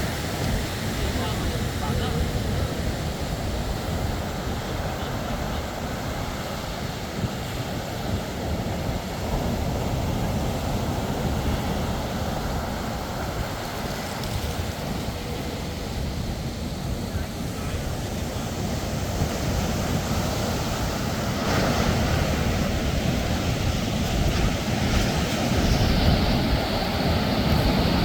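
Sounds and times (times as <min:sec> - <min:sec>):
surf washing onto beach: 0:00.0 - 0:28.0
wind buffeting microphone: 0:00.0 - 0:28.0.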